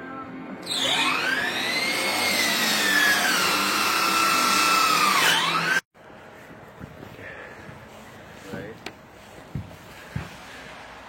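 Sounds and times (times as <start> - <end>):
electric saw cutting wood: 0.6 - 5.9.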